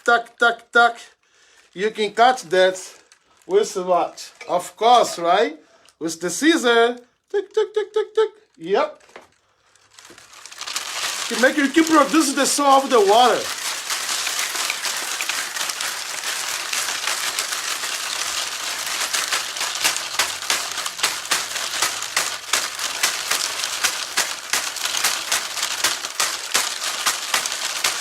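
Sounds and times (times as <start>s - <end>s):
bottle shaker hissing and pattering: 10.4s - 28.0s.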